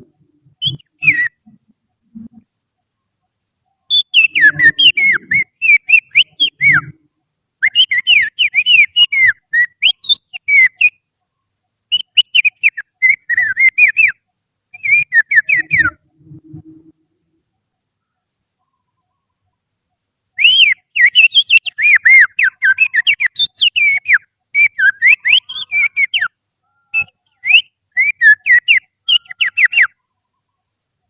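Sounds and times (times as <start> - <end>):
finger whistling birdsong: 0.6 - 1.4, 3.9 - 6.9, 7.6 - 11.0, 11.9 - 14.2, 14.8 - 16.0, 20.4 - 30.0.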